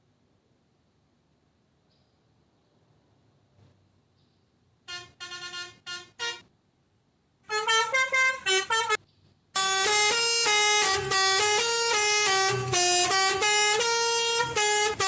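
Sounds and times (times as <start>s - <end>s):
melodica playing horn-like tune: 4.9s - 6.4s, 7.5s - 9.0s, 9.6s - 15.0s.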